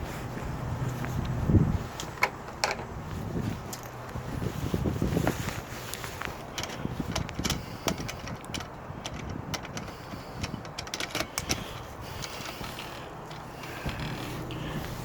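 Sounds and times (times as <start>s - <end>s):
metal lock parts clicking: 2.0s - 2.9s, 6.3s - 14.6s.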